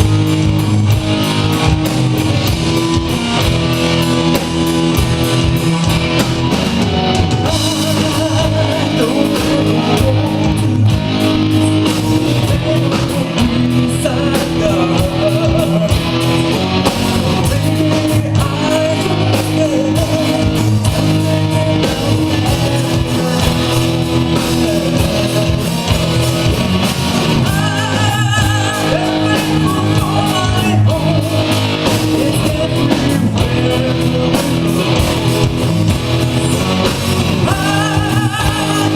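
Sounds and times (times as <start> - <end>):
guitar chords: 0.0 - 38.9
rock band playing: 0.0 - 38.9
person singing: 7.2 - 38.9.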